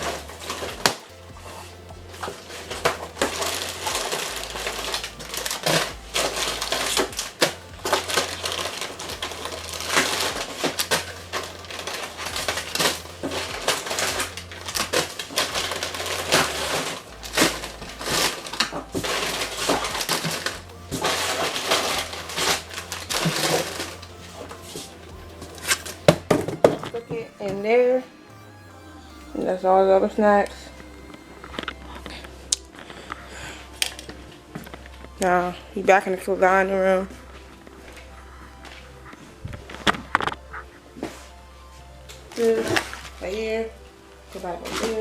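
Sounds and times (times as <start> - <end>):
snack packets rustling and crinkling: 0.0 - 27.8, 37.0 - 45.0
background music bass line: 0.0 - 45.0.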